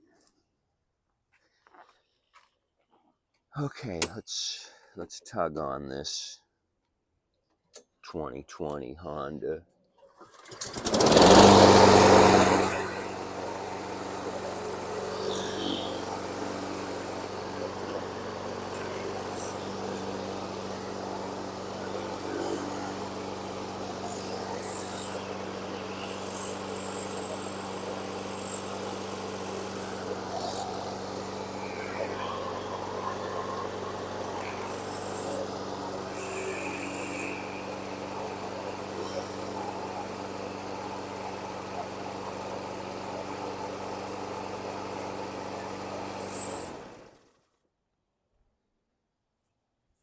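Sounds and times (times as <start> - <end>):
lawn mower engine running: 10.2 - 47.5.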